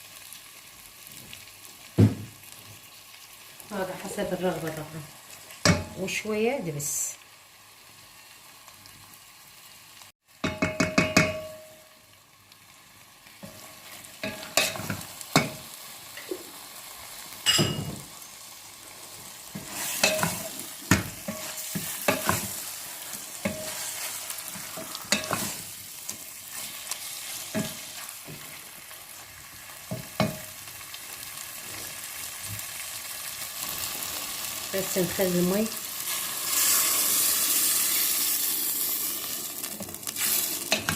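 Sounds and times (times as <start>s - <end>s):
stew base sizzling: 0.0s - 40.9s
spoon knocking against cooking pot: 10.4s - 11.6s.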